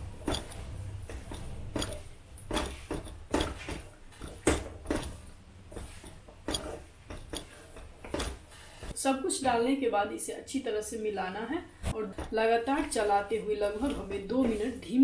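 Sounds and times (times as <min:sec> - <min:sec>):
utensils scraping a cooking pan: 0:00.0 - 0:09.0, 0:11.8 - 0:15.0.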